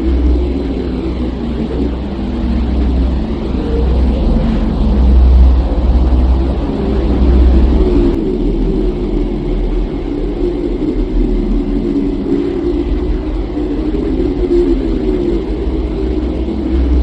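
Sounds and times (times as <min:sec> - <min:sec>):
deep rumbling drone: 0:00.0 - 0:17.0
wavering hum: 0:00.0 - 0:17.0.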